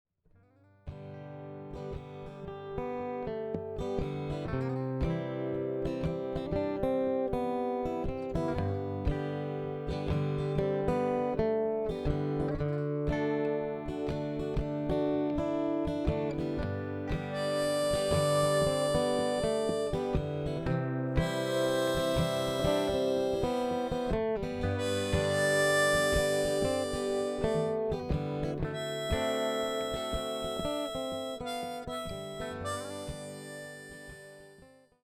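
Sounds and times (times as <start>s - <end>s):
autoharp strummed chords: 16.3s - 34.6s.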